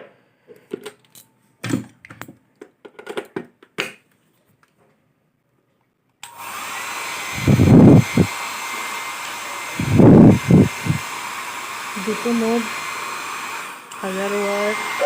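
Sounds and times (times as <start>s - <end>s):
hair dryer blowing: 6.2s - 15.0s
airflow gusts hitting microphone: 7.2s - 8.3s, 9.7s - 11.1s.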